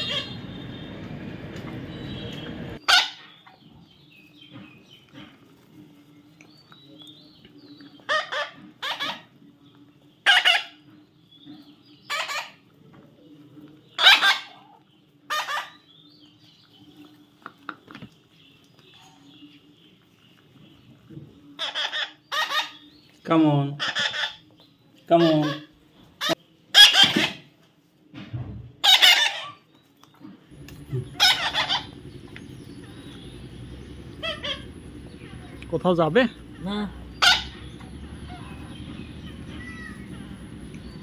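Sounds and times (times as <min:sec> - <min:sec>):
baby parrot squawking: 0:00.0 - 0:00.4, 0:08.1 - 0:09.3, 0:10.2 - 0:10.8, 0:12.1 - 0:12.6, 0:14.0 - 0:14.6, 0:15.3 - 0:15.8, 0:21.6 - 0:22.8, 0:23.8 - 0:24.4, 0:25.2 - 0:27.4, 0:28.8 - 0:29.6, 0:31.1 - 0:32.0, 0:34.2 - 0:34.6, 0:36.8 - 0:40.3
faint low hum: 0:30.5 - 0:41.0
steady rushing noise: 0:30.5 - 0:41.0.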